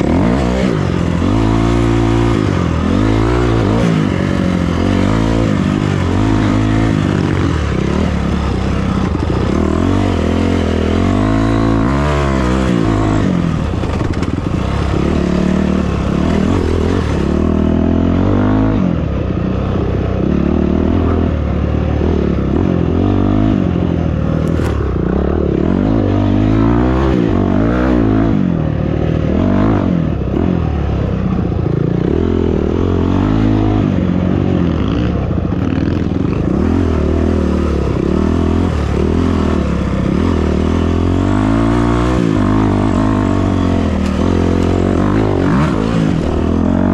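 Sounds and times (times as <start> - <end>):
off-road vehicle engine revving: 0.0 - 46.9
clatter and scraping: 12.7 - 17.4, 24.2 - 25.5.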